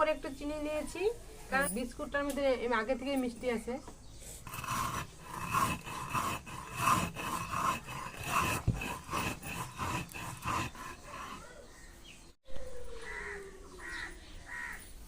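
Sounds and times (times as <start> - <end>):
rhythmic scraping strokes: 4.4 - 11.5.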